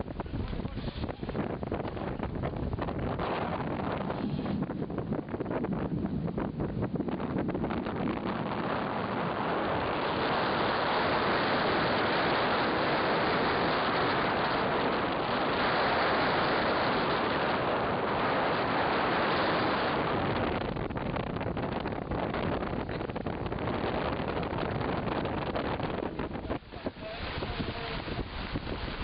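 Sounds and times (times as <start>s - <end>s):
wind and water rushing: 0.0s - 29.0s.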